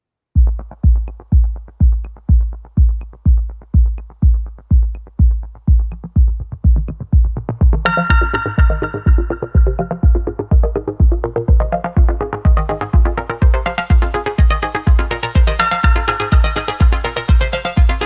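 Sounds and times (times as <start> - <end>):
deep kick drum: 0.4 - 18.0
bright synth chord: 7.9 - 10.4.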